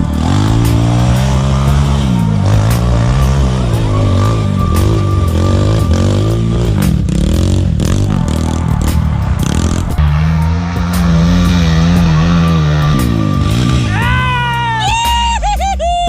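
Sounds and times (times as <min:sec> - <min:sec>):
music: 0:00.0 - 0:16.0
off-road vehicle engines revving: 0:00.0 - 0:16.0.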